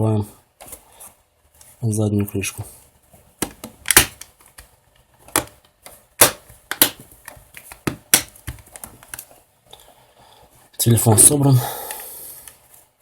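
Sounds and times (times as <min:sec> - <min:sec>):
plastic cover snapping clicks: 0:03.4 - 0:04.7, 0:06.2 - 0:09.2.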